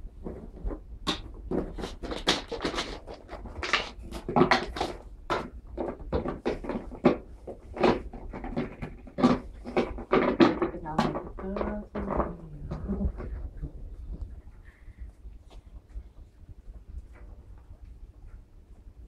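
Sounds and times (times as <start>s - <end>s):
sharp knocks and clatters: 0.1s - 14.8s.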